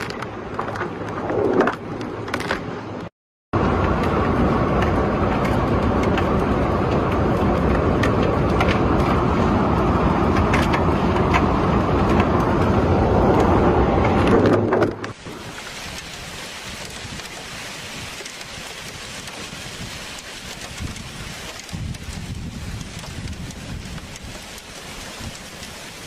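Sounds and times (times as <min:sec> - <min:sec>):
hail pelting: 0:15.1 - 0:26.0
rain hissing: 0:15.1 - 0:26.0.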